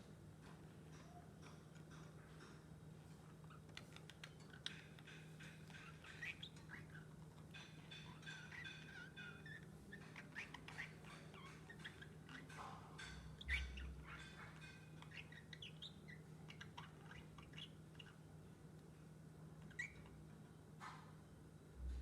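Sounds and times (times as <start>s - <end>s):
lovebird chirping: 3.5s - 18.3s, 19.6s - 20.2s.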